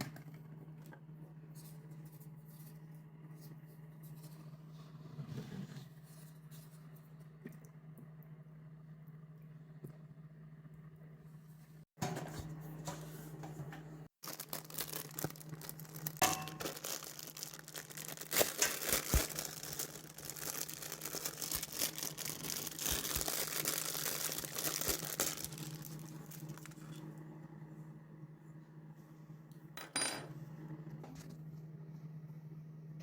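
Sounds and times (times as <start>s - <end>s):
plastic and paper tearing: 14.2s - 26.8s.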